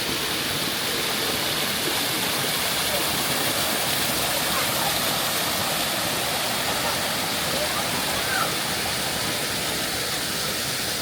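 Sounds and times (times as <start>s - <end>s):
waterfall roaring: 0.0s - 11.0s.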